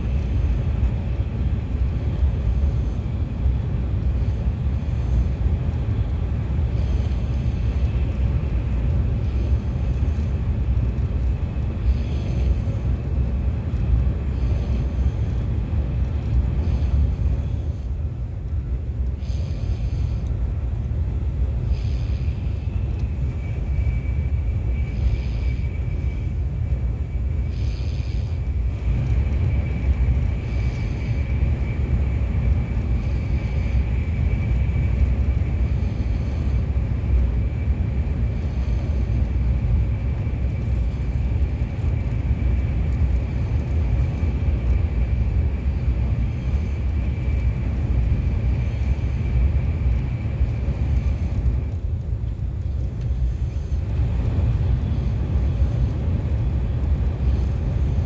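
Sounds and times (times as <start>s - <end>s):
train cabin rumble: 0.0s - 58.0s
faint high whine: 13.7s - 58.0s.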